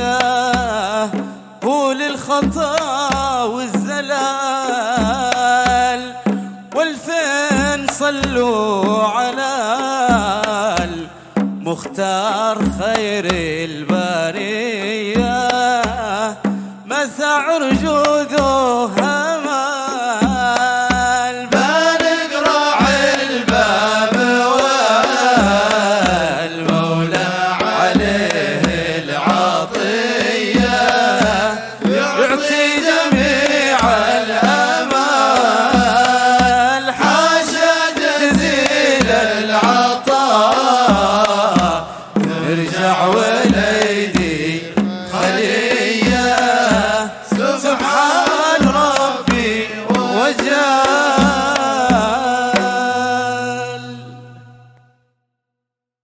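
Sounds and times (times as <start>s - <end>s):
low drum-like beat: 22.8s - 47.5s.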